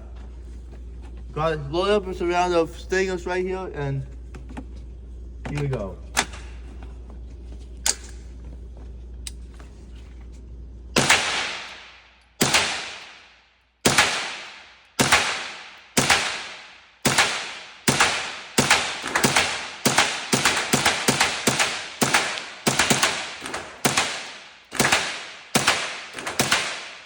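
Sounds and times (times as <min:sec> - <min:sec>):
gunshots with ringing echo: 0:11.0 - 0:27.0.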